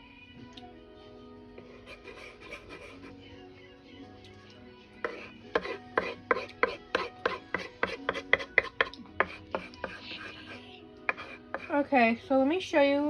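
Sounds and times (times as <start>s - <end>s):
knife chopping on cutting board: 5.1s - 10.3s, 11.1s - 11.7s.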